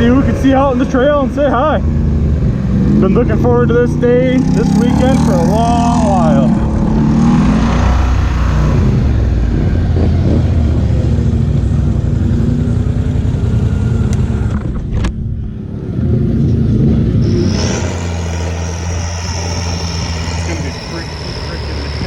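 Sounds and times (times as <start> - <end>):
high steady whine: 0.0 - 10.0, 17.0 - 22.0
atv engines rumbling: 0.0 - 22.0.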